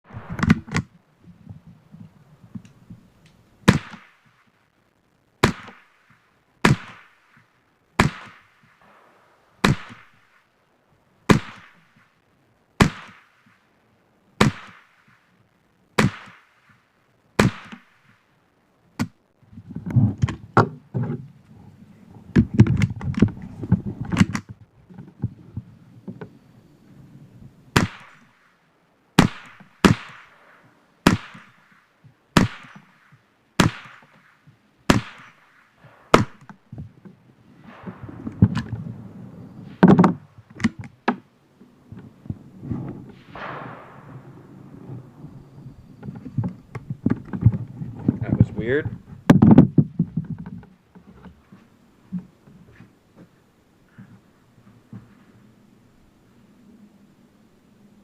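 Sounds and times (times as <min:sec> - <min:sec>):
gunshots with echo: 0:06.6 - 0:07.2, 0:08.0 - 0:10.3, 0:12.8 - 0:13.4, 0:14.4 - 0:15.0, 0:16.0 - 0:16.6, 0:29.2 - 0:31.7, 0:32.4 - 0:32.8, 0:33.6 - 0:34.1, 0:34.9 - 0:36.4, 0:43.2 - 0:45.4
low rumble: 0:37.3 - 0:40.6, 0:41.4 - 0:49.3.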